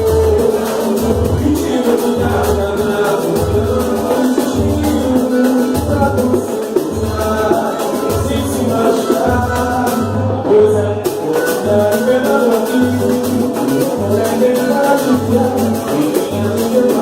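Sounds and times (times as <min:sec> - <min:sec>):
deep bass beat: 0:00.0 - 0:10.8
jingling hand percussion: 0:00.0 - 0:17.0
person singing: 0:00.0 - 0:17.0
samba band playing: 0:00.0 - 0:17.0.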